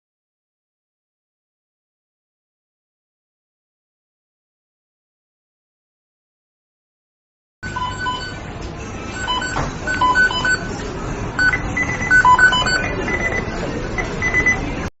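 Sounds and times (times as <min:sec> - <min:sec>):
electronic timer beeps: 0:07.6 - 0:08.4, 0:09.1 - 0:10.8, 0:11.4 - 0:14.7
steady background noise: 0:07.6 - 0:14.9.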